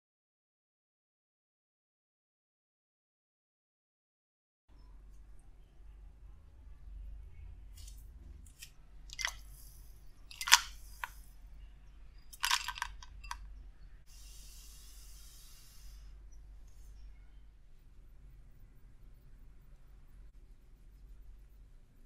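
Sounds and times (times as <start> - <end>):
utensils knocking and clinking: 9.1 - 9.4, 10.3 - 11.2, 12.3 - 13.4.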